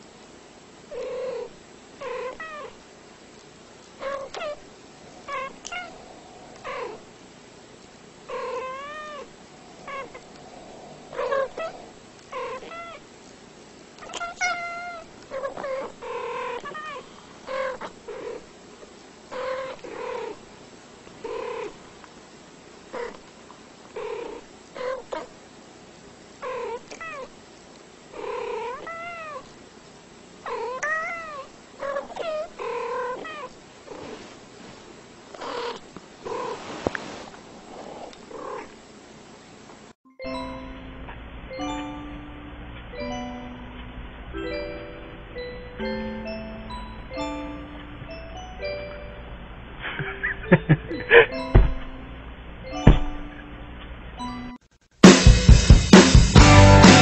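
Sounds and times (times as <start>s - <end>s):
cat meowing: 2.0s - 2.8s, 5.2s - 6.0s, 8.3s - 10.3s, 11.1s - 13.0s, 14.0s - 18.0s.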